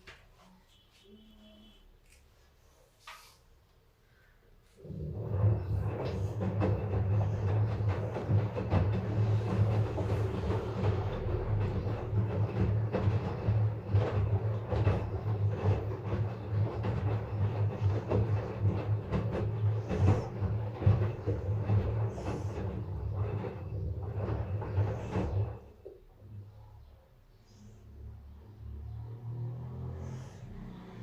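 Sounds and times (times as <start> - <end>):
washing machine motor hum: 3.8 - 31.0
drum knocking and rattling: 5.0 - 25.8.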